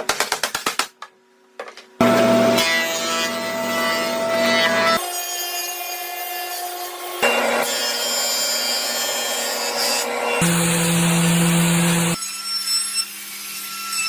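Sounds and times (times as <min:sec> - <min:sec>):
power tool cutting wood: 0:02.0 - 0:14.0.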